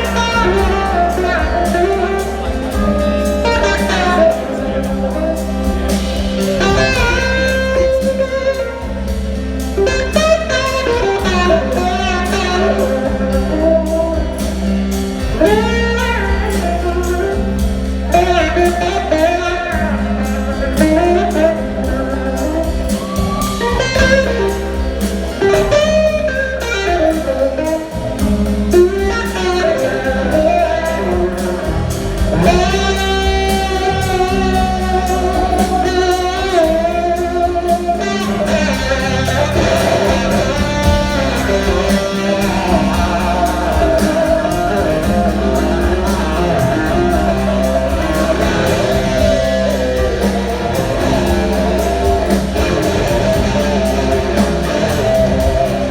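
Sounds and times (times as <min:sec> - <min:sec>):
blues-rock band playing: 0:00.0 - 0:55.9
electric guitar lead line: 0:00.0 - 0:55.9.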